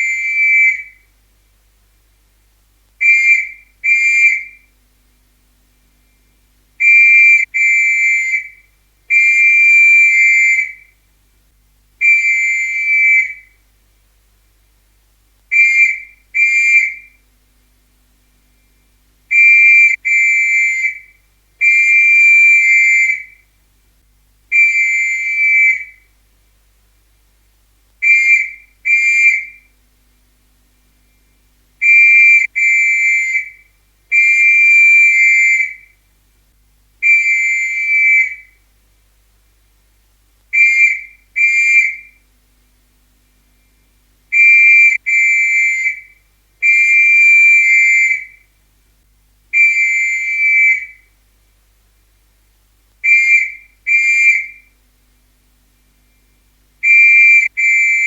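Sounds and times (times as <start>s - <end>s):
police whistle blasts: 0.0s - 1.0s, 3.0s - 4.7s, 6.8s - 10.9s, 12.0s - 13.6s, 15.5s - 17.2s, 19.3s - 23.4s, 24.5s - 26.1s, 28.0s - 29.7s, 31.8s - 36.0s, 37.0s - 38.6s, 40.5s - 42.2s, 44.3s - 48.5s, 49.5s - 51.1s, 53.0s - 54.7s, 56.8s - 58.0s.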